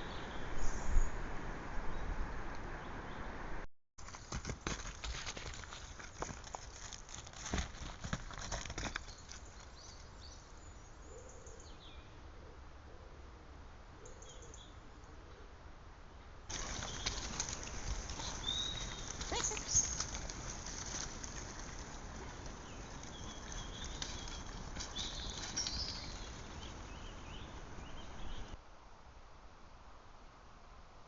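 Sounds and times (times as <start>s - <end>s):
bird chirps: 16.5s - 20.2s, 22.6s - 28.6s.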